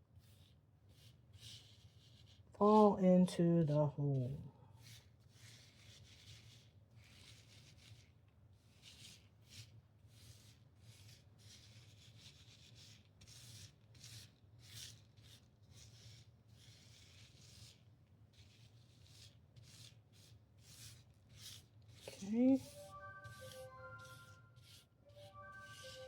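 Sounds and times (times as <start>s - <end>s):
brush swishing over template: 18.4s - 26.0s.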